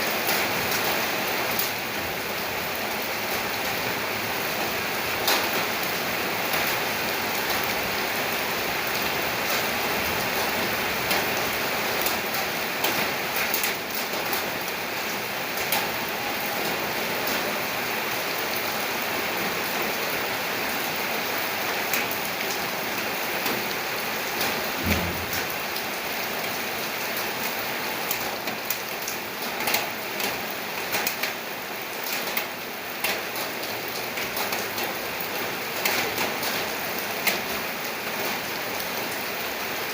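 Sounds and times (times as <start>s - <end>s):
rain on hard surfaces: 0.0s - 39.9s
low thud: 24.8s - 25.5s.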